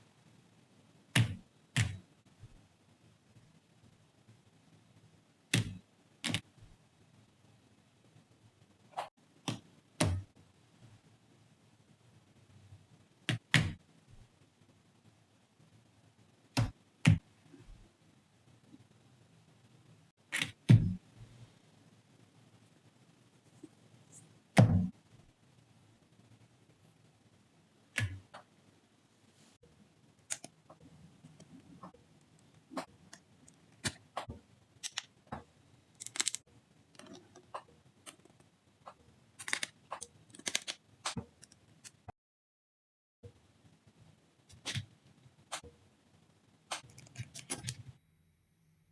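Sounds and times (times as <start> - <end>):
plastic toy clicks and rustles: 34.8 - 35.2, 36.0 - 37.5, 39.4 - 40.8, 46.7 - 47.8.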